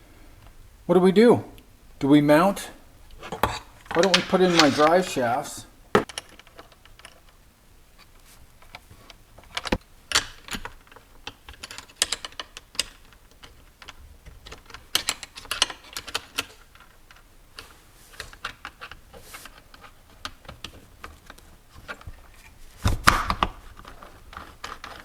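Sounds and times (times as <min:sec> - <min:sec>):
small parts clicking and rattling: 0:03.8 - 0:05.2, 0:09.5 - 0:22.5, 0:23.7 - 0:25.0.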